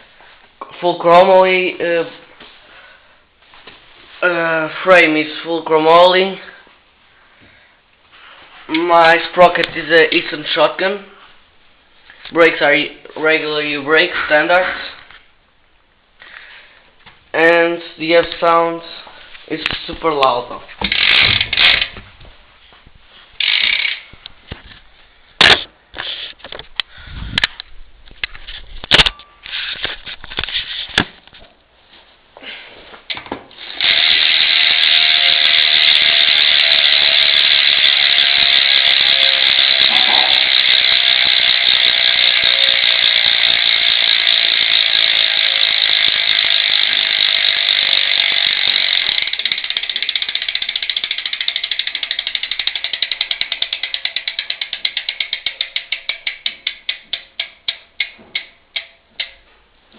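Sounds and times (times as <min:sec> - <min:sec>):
bicycle hub ratcheting buzz: 0:20.8 - 0:22.0, 0:23.4 - 0:24.3, 0:33.6 - 0:59.4.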